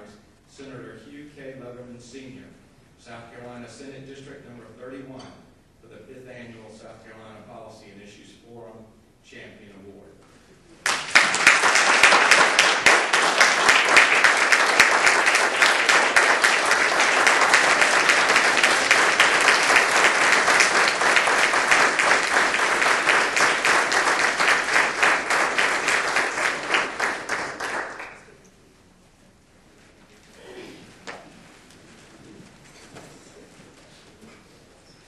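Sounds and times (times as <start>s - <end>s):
audience applauding: 10.8s - 28.4s.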